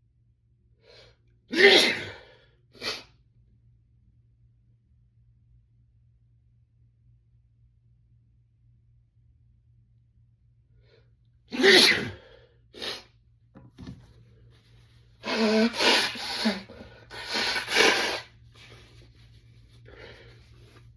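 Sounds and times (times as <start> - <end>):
man sneezing: 1.5 - 3.0, 11.5 - 13.1, 15.2 - 18.3.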